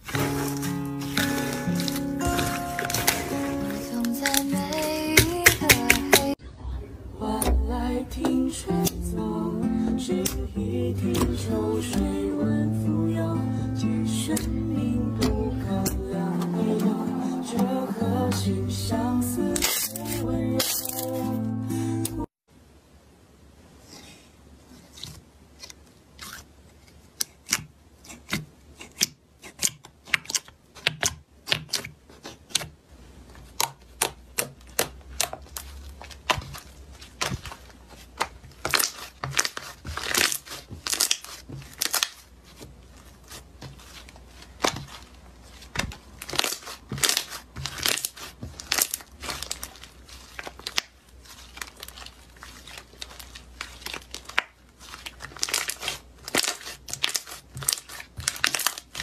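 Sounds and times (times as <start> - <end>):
slime crackling and popping: 0.0 - 6.4, 33.4 - 59.0.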